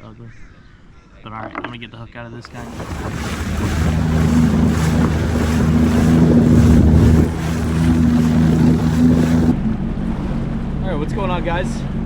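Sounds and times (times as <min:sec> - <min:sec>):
jet ski engine running: 0:02.5 - 0:09.6
wind buffeting microphone: 0:02.5 - 0:09.6.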